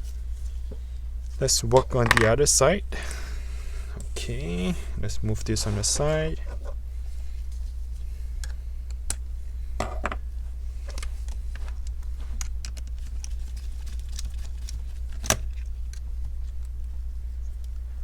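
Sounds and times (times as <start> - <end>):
steady low hum: 0.0 - 18.0
small plastic parts clicking: 10.9 - 16.7.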